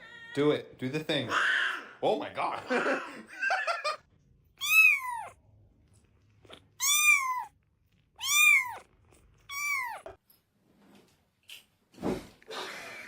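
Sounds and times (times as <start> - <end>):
cat meowing: 4.6 - 5.4, 6.5 - 7.6, 8.2 - 10.2.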